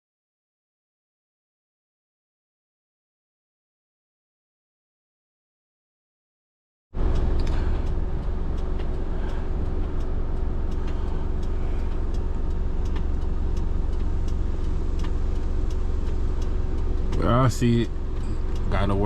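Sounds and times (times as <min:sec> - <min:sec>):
car engine idling: 0:07.0 - 0:19.0
light clicks: 0:07.1 - 0:18.7.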